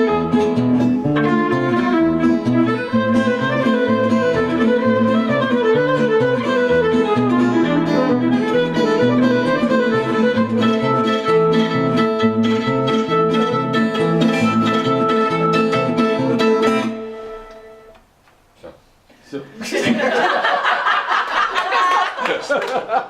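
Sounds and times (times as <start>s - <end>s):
plucked guitar: 0.0s - 18.0s
violin melody: 0.0s - 18.0s.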